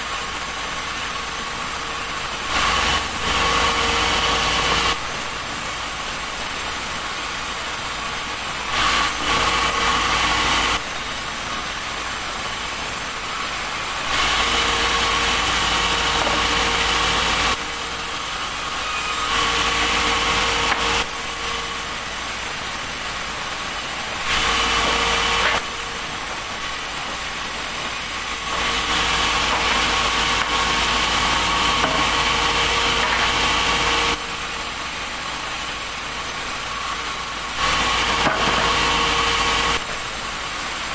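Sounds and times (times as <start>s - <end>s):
steady engine noise: 0.0s - 40.9s
saw cutting through timber: 1.2s - 5.6s, 8.6s - 11.0s, 13.2s - 34.5s, 36.7s - 40.2s.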